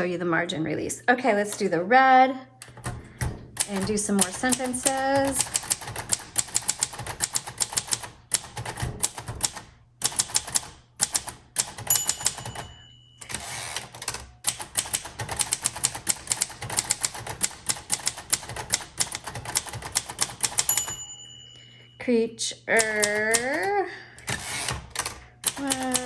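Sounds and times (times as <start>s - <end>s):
typewriter carriage return: 3.6s - 21.0s, 22.8s - 26.0s
typewriter key strikes: 3.6s - 21.0s
typewriter margin bell ding: 11.7s - 14.0s, 20.5s - 22.0s.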